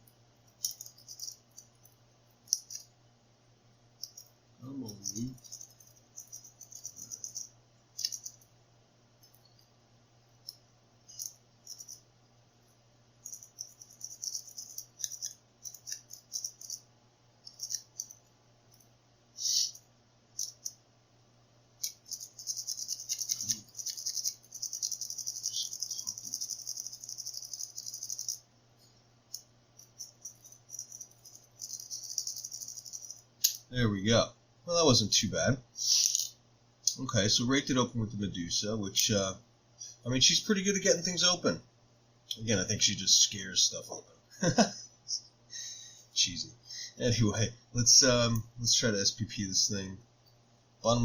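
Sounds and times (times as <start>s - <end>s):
faint low hum: 0.0s - 51.0s
lock pick rattling pins: 0.5s - 1.9s, 4.9s - 7.4s, 21.8s - 28.4s, 29.3s - 33.6s.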